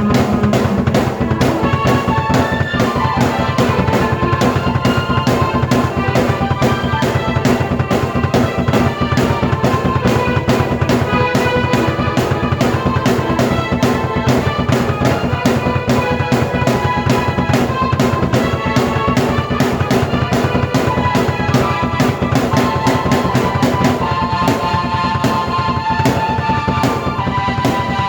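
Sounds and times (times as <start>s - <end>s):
drum kit beat: 0.0s - 28.0s
keyboard chords and melody: 0.0s - 28.0s.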